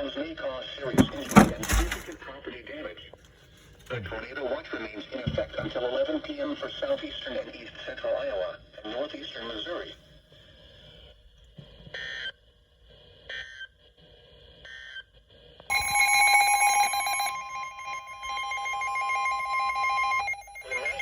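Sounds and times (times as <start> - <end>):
pulsing warble alert tone: 15.7 - 21.0.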